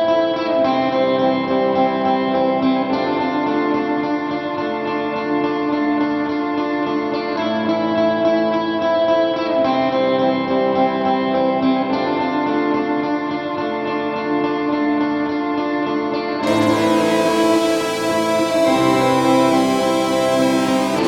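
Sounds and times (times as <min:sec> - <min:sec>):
background guitar music: 0:16.4 - 0:21.0.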